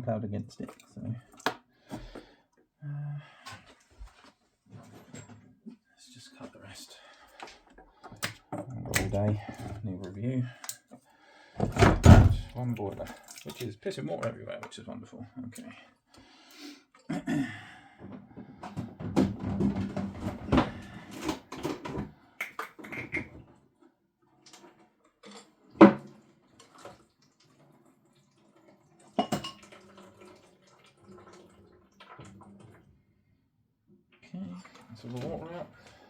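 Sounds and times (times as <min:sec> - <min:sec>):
tank clunking and knocking: 0:11.6 - 0:12.6
water splashing: 0:12.0 - 0:14.2.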